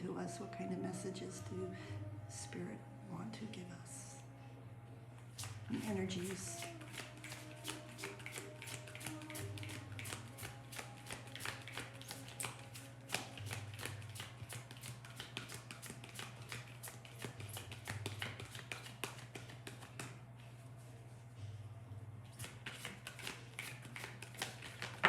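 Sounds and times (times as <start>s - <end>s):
cards being shuffled: 5.4s - 20.6s, 22.3s - 25.0s
steady low hum: 19.2s - 22.7s.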